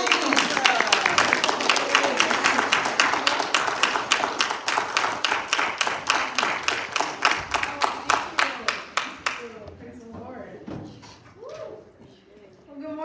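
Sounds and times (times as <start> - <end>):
crowd applauding: 0.0 - 9.5.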